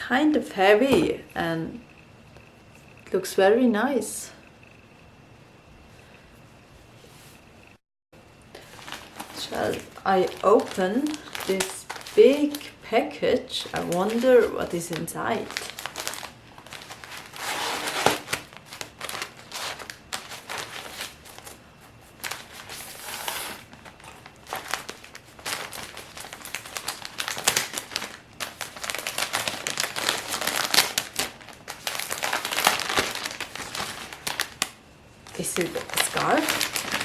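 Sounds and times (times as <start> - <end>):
package wrapping crinkling: 8.6 - 12.8, 13.5 - 37.0.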